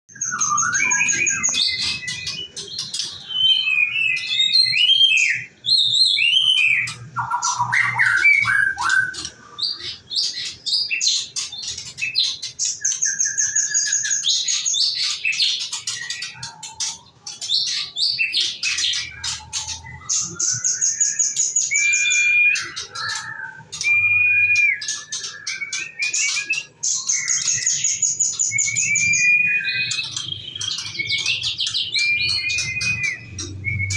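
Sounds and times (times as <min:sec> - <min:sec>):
songbird singing trills and whistles: 0:00.1 - 0:33.9.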